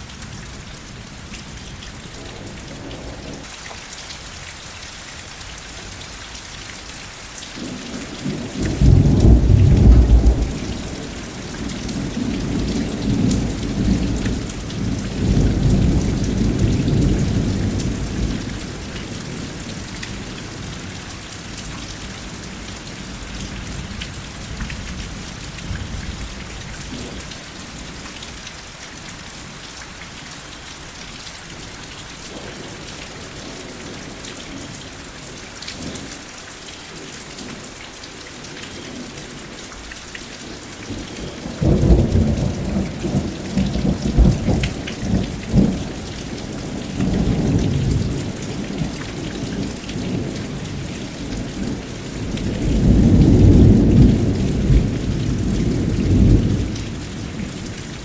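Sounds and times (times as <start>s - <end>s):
steady rain falling: 0.0s - 58.0s
rolling thunder: 8.2s - 18.8s, 41.6s - 46.0s, 50.0s - 57.5s.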